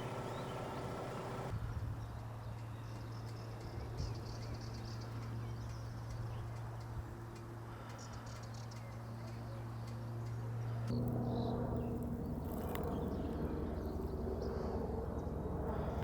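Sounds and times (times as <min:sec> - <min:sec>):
low hum: 0:00.0 - 0:02.4, 0:08.9 - 0:16.0.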